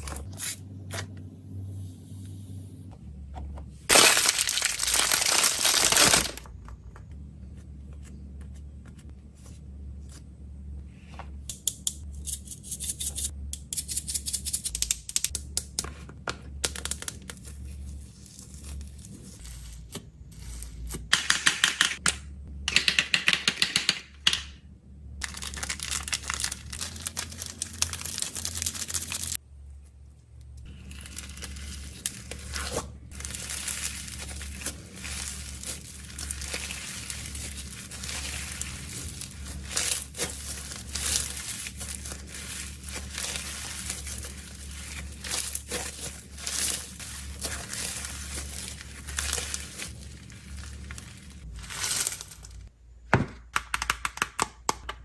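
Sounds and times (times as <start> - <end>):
packaging torn open: 3.9 - 6.5, 25.3 - 29.4
plastic wrappers crinkling: 3.9 - 6.6, 25.2 - 29.4, 30.7 - 52.7.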